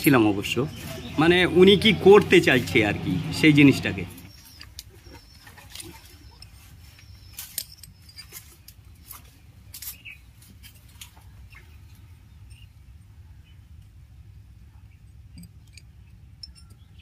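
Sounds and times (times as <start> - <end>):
metal parts clicking and tapping: 15.1 - 17.0.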